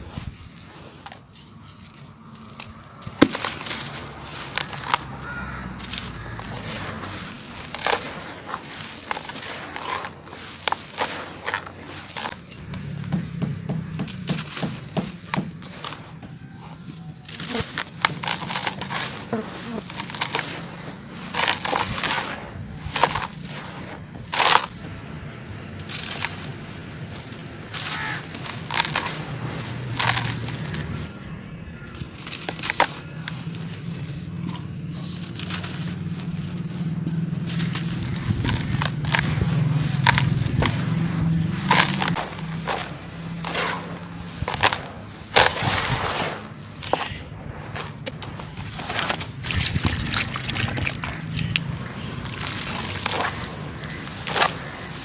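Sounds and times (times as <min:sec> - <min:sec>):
biscuits cracking in water: 0:17.2 - 0:23.6, 0:24.2 - 0:24.9, 0:25.8 - 0:31.0, 0:31.8 - 0:47.2, 0:48.1 - 0:55.0.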